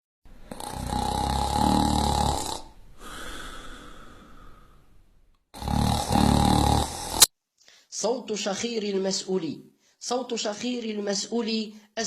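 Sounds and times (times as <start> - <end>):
person snoring: 0.4 - 4.8, 5.6 - 7.3.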